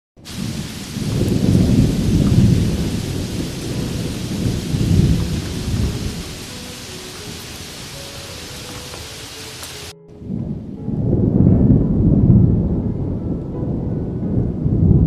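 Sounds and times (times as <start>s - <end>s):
steady rain: 0.2s - 10.0s
rolling thunder: 0.2s - 15.0s.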